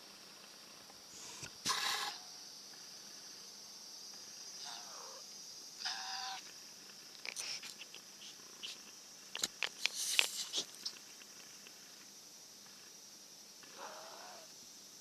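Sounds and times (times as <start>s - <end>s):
cicadas droning: 0.0s - 15.0s
crow cawing: 5.8s - 6.4s, 13.8s - 14.5s.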